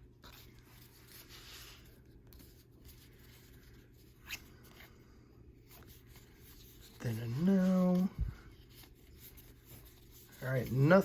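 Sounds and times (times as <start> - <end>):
cards sliding and rubbing: 0.2 - 5.0, 5.6 - 11.0.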